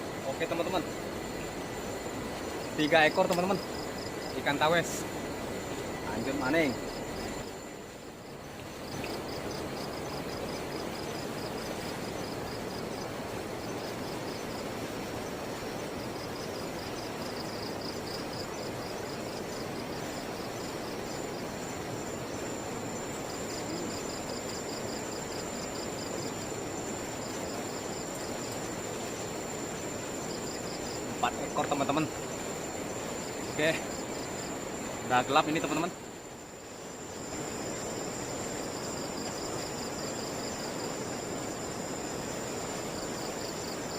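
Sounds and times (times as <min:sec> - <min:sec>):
steady rushing noise: 0:00.0 - 0:26.5
crickets chirping: 0:00.0 - 0:43.9
high insect whine: 0:00.0 - 0:43.9.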